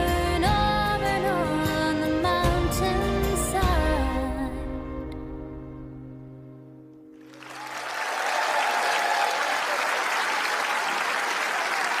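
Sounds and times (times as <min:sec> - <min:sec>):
audience applause: 0:07.2 - 0:12.0.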